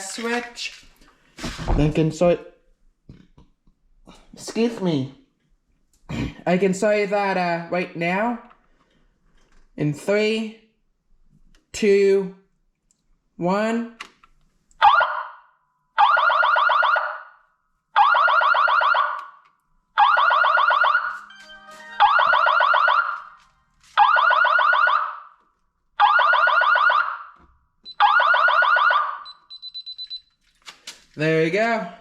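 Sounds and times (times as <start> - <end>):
fire alarm horn blasts: 20.0 - 23.4.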